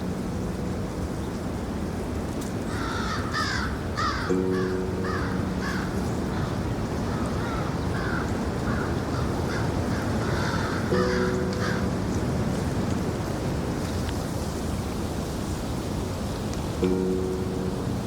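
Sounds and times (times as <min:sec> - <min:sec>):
crows cawing: 0:02.7 - 0:12.1.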